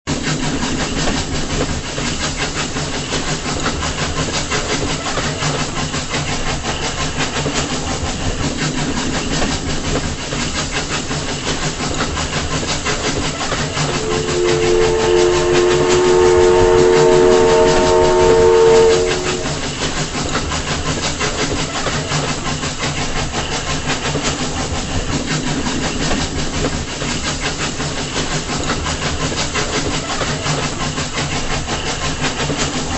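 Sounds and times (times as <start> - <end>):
steam locomotive running: 0.1 - 32.9
steam locomotive whistle: 13.3 - 19.8.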